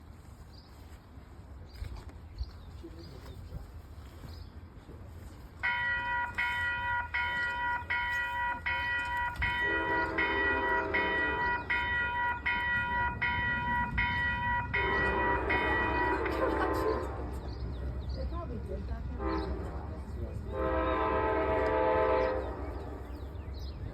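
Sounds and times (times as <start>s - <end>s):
railroad crossing bell ringing: 5.6s - 18.5s, 20.5s - 23.7s
locomotive horn blast: 5.9s - 17.8s, 19.1s - 23.3s.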